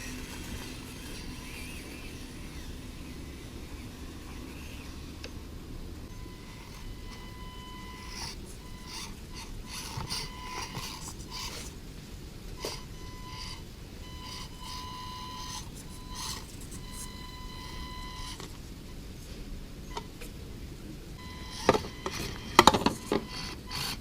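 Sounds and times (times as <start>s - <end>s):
small electric motor whining: 0.0s - 12.1s, 12.8s - 18.4s.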